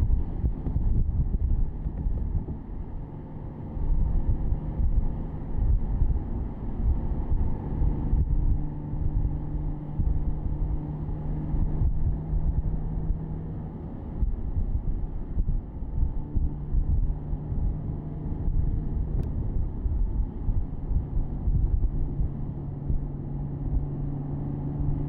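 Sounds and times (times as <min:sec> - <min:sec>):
wind on microphone: 0:00.0 - 0:03.0, 0:03.8 - 0:25.0
car engine drone: 0:00.0 - 0:25.0
road rumble: 0:00.0 - 0:25.0.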